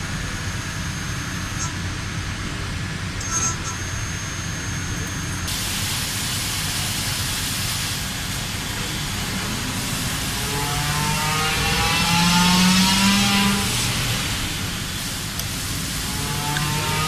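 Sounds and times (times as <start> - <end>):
machine noise hiss: 0.0 - 17.0
motor whine rising in pitch: 8.7 - 17.0.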